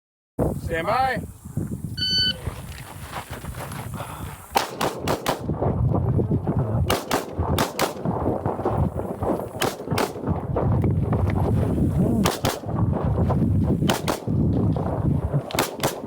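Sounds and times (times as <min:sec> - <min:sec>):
pistol shots: 0:04.5 - 0:05.5, 0:06.8 - 0:10.4, 0:12.2 - 0:12.7, 0:13.8 - 0:14.4, 0:15.4 - 0:16.0.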